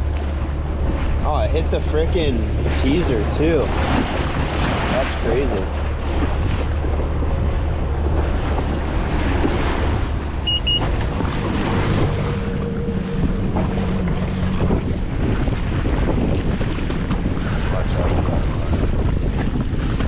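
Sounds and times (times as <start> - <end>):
choppy sea water: 0.0 - 20.0
jet ski engine humming: 0.0 - 20.0
wind buffeting microphone: 0.0 - 20.0
short high beeps: 10.4 - 10.9.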